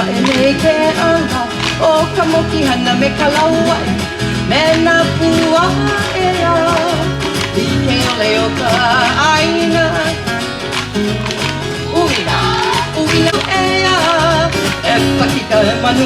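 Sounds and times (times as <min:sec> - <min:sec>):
song with guitar and beat: 0:00.0 - 0:16.0.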